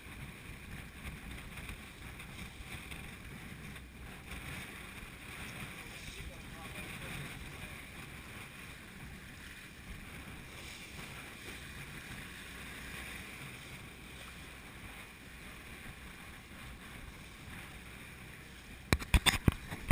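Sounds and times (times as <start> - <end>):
sea around a yacht: 0.0 - 19.9.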